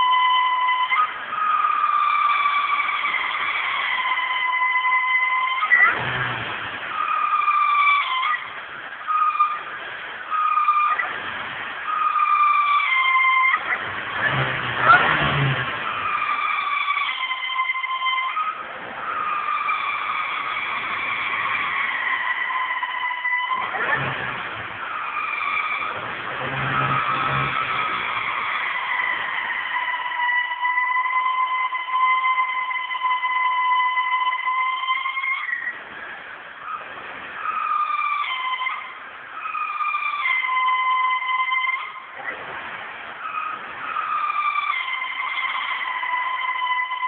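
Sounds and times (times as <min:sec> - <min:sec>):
high-pitched whistle: 0:00.0 - 0:06.0, 0:09.1 - 0:09.7, 0:25.5 - 0:35.8
engine high-pitched whistle: 0:00.0 - 0:42.5, 0:43.2 - 0:47.0.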